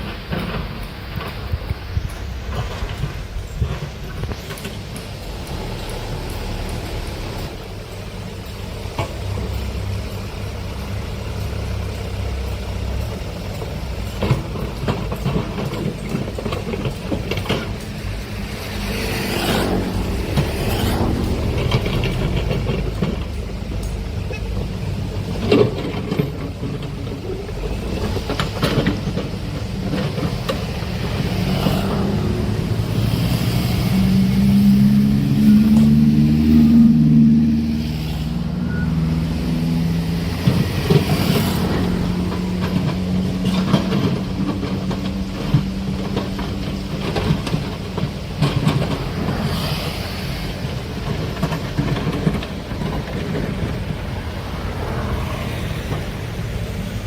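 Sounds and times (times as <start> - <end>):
heavy diesel machinery rumbling: 0.0 - 57.0.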